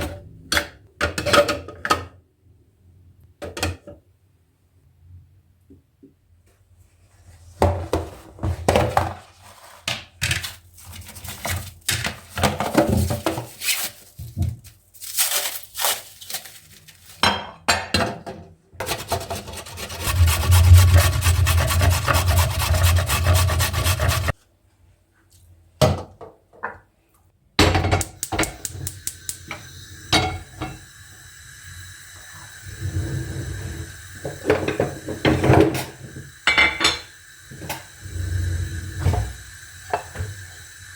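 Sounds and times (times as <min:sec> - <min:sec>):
steady rasping whirring: 0:19.5 - 0:24.4.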